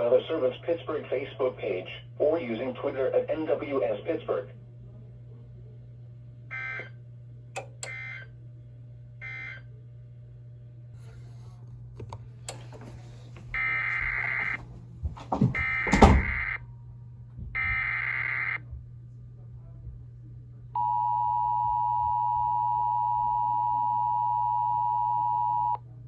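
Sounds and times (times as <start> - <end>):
steady low hum: 0.0 - 25.1
loud thump: 15.2 - 16.5.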